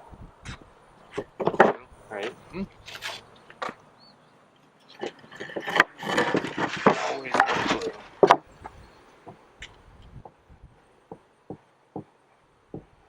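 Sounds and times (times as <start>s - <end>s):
plywood pieces scraping and knocking: 0.5s - 4.1s, 4.8s - 10.4s.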